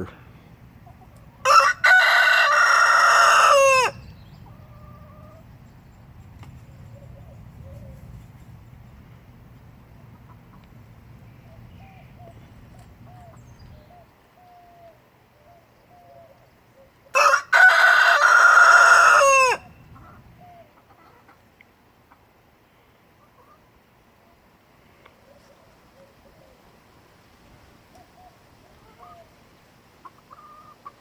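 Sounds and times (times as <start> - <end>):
rooster crowing: 1.4 - 5.4, 17.1 - 19.8
hens clucking softly: 10.1 - 10.8, 19.9 - 22.3, 23.2 - 23.7, 30.0 - 31.0.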